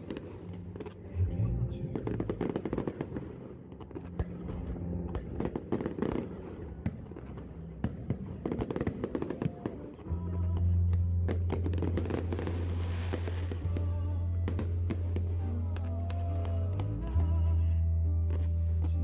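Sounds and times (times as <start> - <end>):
fireworks cracking: 0.0 - 1.1, 1.8 - 17.6
music playing: 0.0 - 19.0
deep bass note: 1.2 - 2.5.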